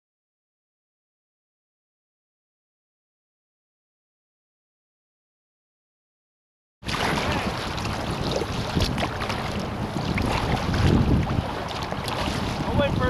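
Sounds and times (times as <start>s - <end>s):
water slapping and splashing: 6.8s - 13.0s
wind buffeting microphone: 6.9s - 13.0s.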